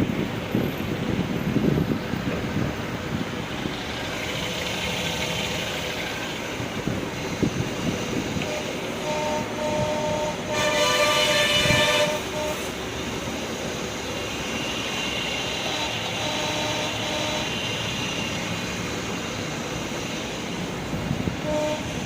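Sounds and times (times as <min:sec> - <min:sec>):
vehicle noise: 0:00.0 - 0:22.0
horn toot: 0:08.4 - 0:12.7, 0:15.6 - 0:17.6, 0:21.4 - 0:22.0.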